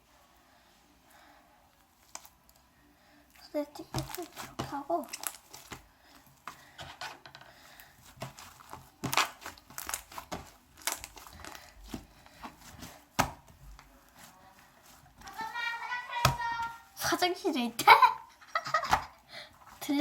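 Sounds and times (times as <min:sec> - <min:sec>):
slime squished by hand: 0:03.9 - 0:05.9, 0:08.0 - 0:13.6.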